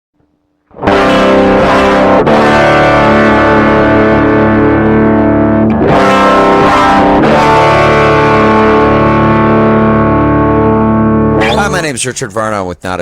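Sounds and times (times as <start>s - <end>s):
overdriven electric guitar chords: 0.2s - 11.9s.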